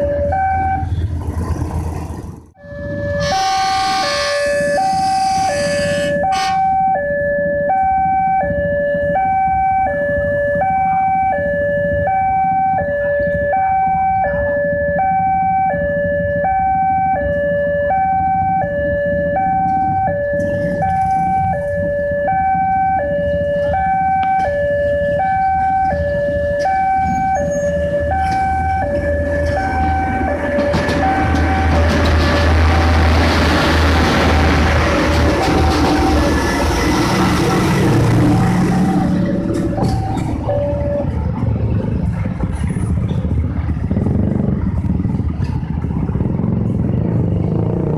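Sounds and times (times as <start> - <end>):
two-tone electronic alarm: 0.0 - 0.9, 2.6 - 32.2, 37.9 - 41.2
diesel engine drone: 0.0 - 47.9
loud horn: 3.0 - 6.9, 29.4 - 40.0.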